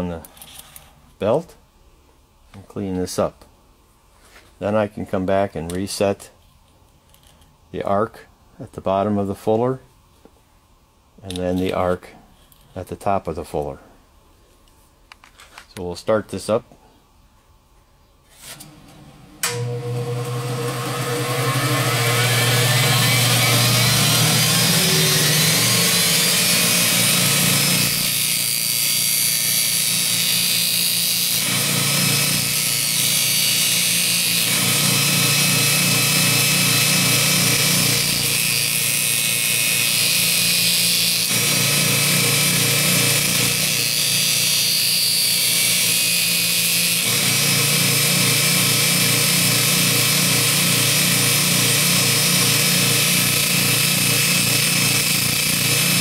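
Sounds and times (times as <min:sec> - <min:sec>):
belt grinder running: 0:19.5 - 0:56.0
steel grinding against sanding belt: 0:20.8 - 0:56.0.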